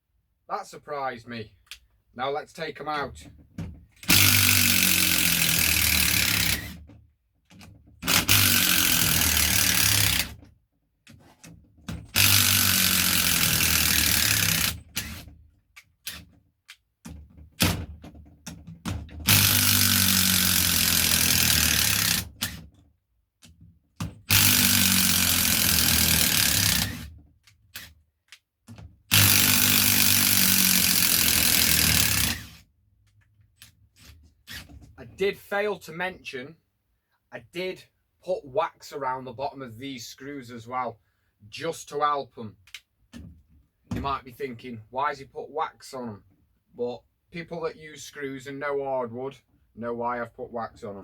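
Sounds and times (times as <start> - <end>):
impact driver hammering: 4.0 - 6.8, 8.0 - 10.3, 11.9 - 15.2, 18.8 - 22.6, 24.0 - 27.1, 29.1 - 32.6.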